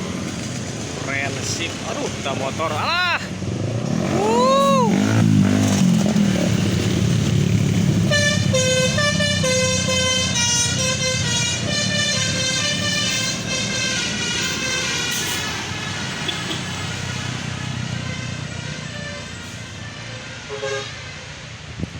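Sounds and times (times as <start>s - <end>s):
engine rumbling: 0.0s - 21.9s
bus horn playing melody: 7.9s - 21.6s.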